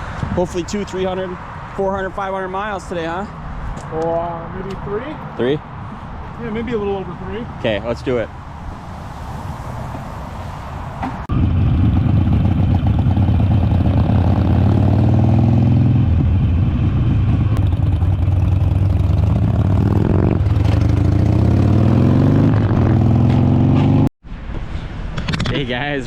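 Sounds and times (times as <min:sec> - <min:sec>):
motorcycle engine running: 0:11.3 - 0:21.4.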